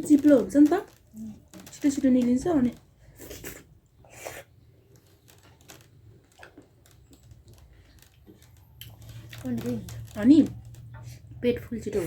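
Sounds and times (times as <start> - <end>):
wet mouth clicks eating: 6.2 - 9.4.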